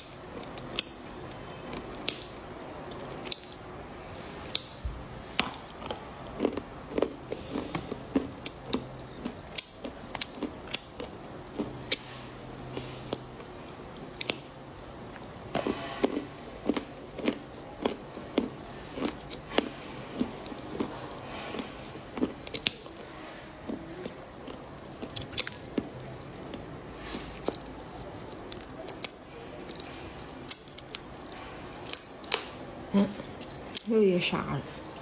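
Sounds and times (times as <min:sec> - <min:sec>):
chocolate crunching: 0:00.0 - 0:12.1, 0:23.7 - 0:32.6.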